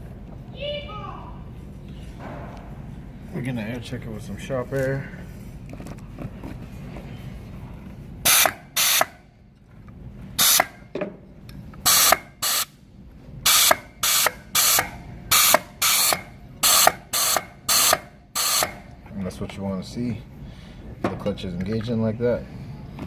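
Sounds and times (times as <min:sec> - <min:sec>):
compressed air blasts from nozzle: 0:08.2 - 0:09.2, 0:10.4 - 0:10.8, 0:11.8 - 0:12.8, 0:13.4 - 0:18.9.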